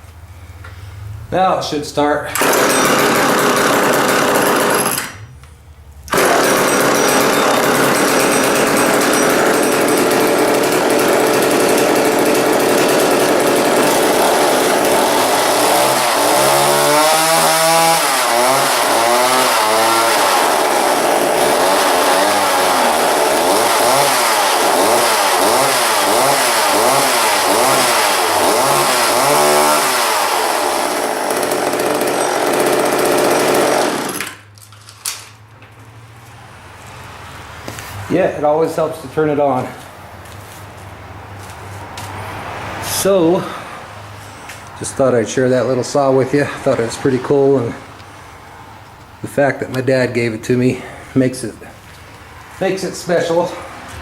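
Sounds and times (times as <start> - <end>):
chainsaw engine revving: 2.3 - 5.3, 6.1 - 34.4.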